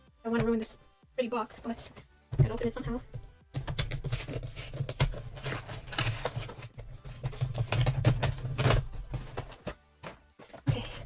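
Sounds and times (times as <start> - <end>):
cardboard packaging scraping and rustling: 3.8 - 9.8.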